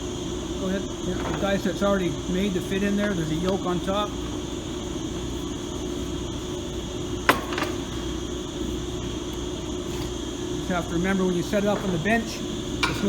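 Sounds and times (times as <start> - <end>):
machine humming: 0.0 - 13.0
metal clack: 12.8 - 13.0.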